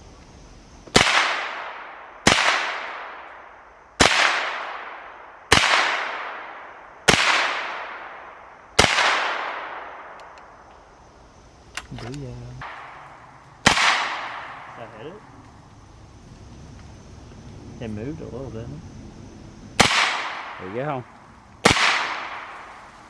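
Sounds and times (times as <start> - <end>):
gunshots echoing: 0.9 - 3.3, 4.0 - 10.2, 12.6 - 15.3, 19.8 - 22.9.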